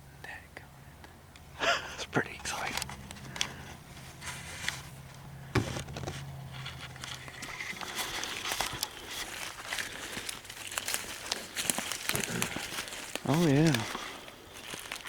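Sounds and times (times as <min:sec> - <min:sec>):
footsteps through dry leaves: 0:06.6 - 0:15.0.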